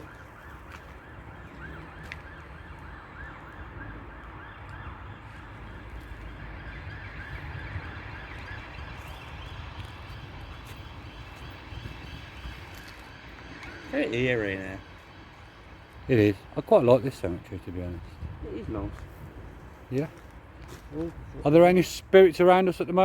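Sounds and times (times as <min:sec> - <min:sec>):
distant electronic alarm warbling: 0:00.0 - 0:17.4
wind rumble on microphone: 0:00.0 - 0:22.3.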